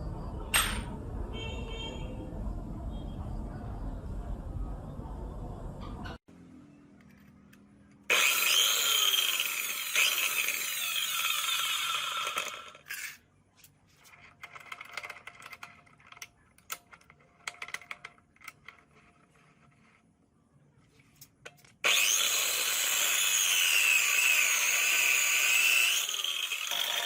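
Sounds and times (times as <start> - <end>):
power cutting machine running: 8.1 - 12.8, 21.8 - 27.0
scraping and clicking: 12.8 - 21.8.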